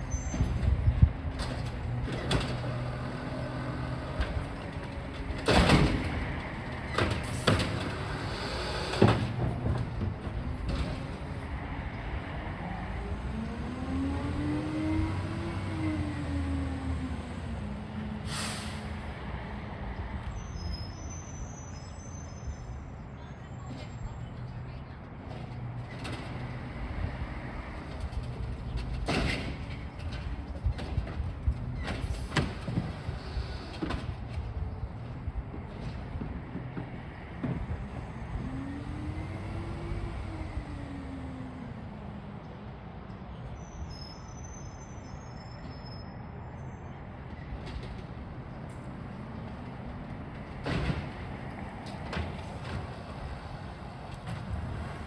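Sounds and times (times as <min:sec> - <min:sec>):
garbage truck engine revving: 0:12.9 - 0:18.8
sharp clanks or hisses: 0:18.3 - 0:18.9.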